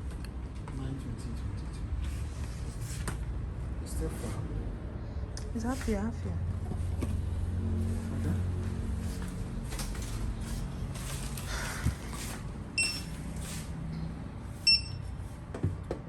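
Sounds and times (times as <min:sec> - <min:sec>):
shop background noise: 0:00.0 - 0:16.0
short electronic beeps: 0:12.8 - 0:13.2, 0:14.6 - 0:15.1.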